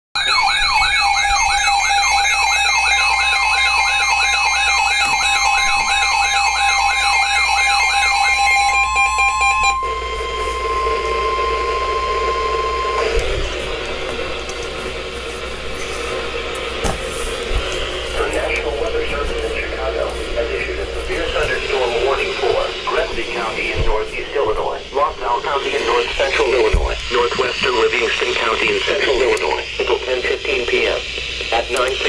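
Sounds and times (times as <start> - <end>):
electronic warbling alarm: 0.2 - 16.5.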